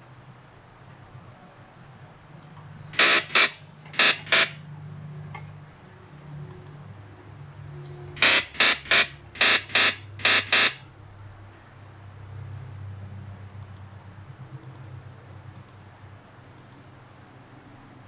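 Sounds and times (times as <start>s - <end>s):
synthesized electric zap: 3.0s - 4.6s, 8.2s - 10.8s.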